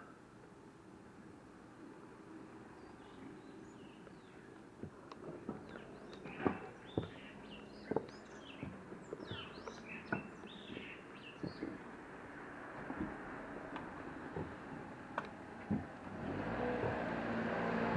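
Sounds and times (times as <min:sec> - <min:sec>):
small birds chirping: 0:01.7 - 0:12.7.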